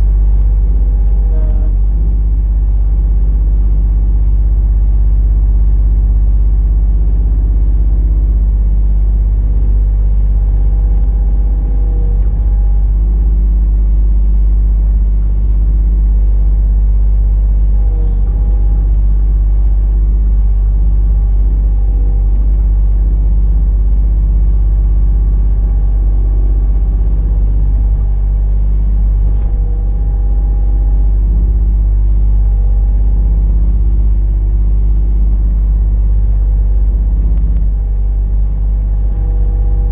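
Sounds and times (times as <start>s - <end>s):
machine whine: 0.0s - 39.9s
excavator engine under load: 17.4s - 35.4s.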